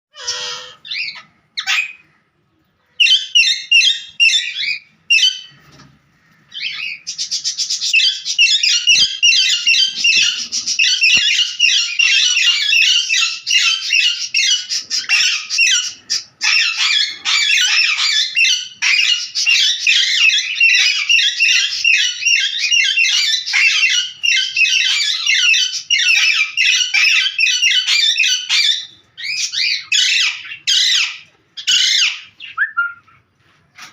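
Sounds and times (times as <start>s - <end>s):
birds squawking and chattering: 0.1s - 33.9s.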